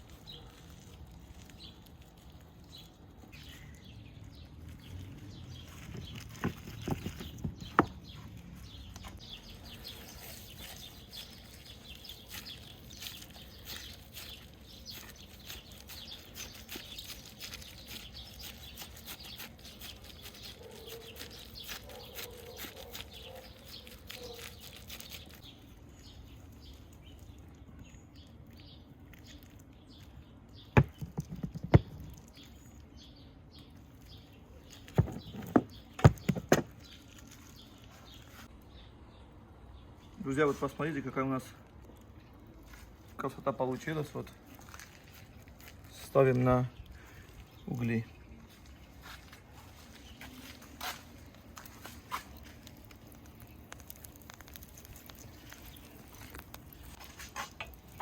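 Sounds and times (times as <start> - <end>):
birds chirping: 0.0 - 58.0
sharp knocks: 30.8 - 32.1.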